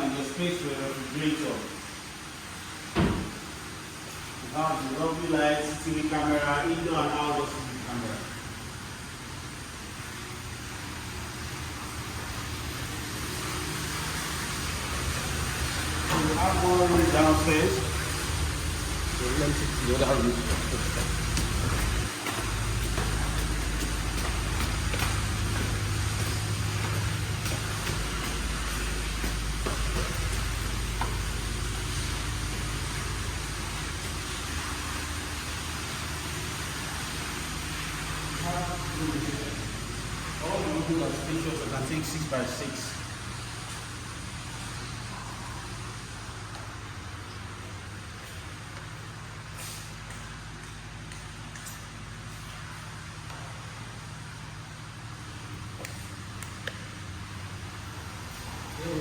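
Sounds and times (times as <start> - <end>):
steady background hiss: 0.0 - 59.0
low hum: 10.9 - 42.0.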